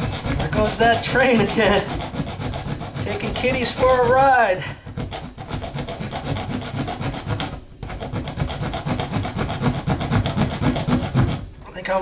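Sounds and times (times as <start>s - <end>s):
hacksaw sawing through nail: 0.0s - 11.5s.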